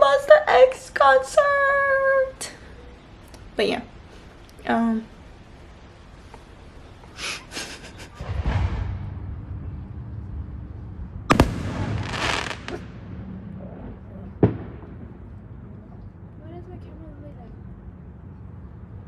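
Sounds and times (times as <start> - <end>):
rustling: 11.3 - 12.8.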